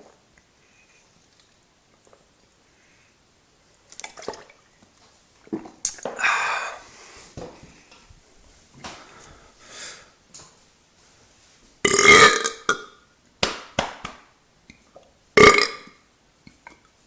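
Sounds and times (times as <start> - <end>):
person burping loudly: 11.8 - 13.0, 15.4 - 16.0.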